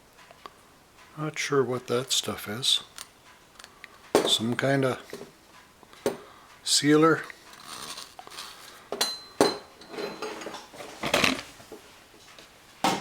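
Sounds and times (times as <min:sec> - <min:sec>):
small hard parts clinking: 0:02.8 - 0:05.3, 0:07.0 - 0:10.7.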